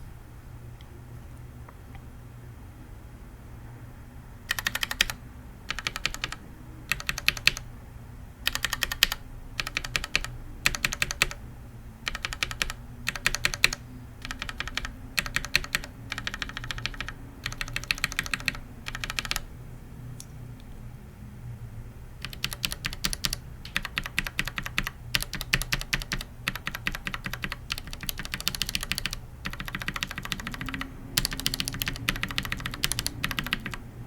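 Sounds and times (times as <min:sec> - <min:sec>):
mechanical keyboard keystrokes: 0:04.5 - 0:07.7, 0:08.5 - 0:11.4, 0:12.0 - 0:19.4, 0:22.2 - 0:33.8.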